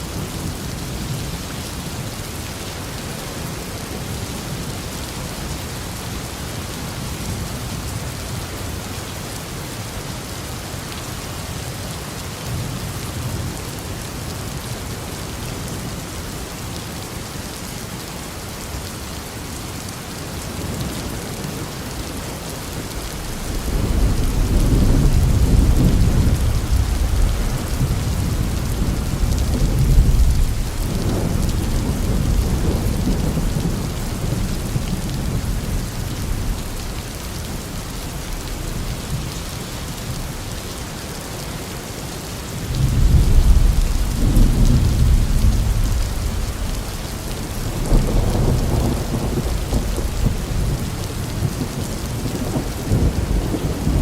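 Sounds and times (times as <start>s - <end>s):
heavy rain: 0.0s - 54.0s
rolling thunder: 22.9s - 36.9s, 42.7s - 54.0s.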